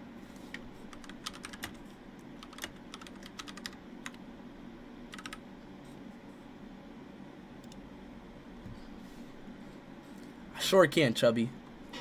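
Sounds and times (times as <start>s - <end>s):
faint steady hum: 0.0s - 12.0s
keyboard typing: 0.9s - 1.8s, 2.4s - 4.2s, 5.1s - 5.4s.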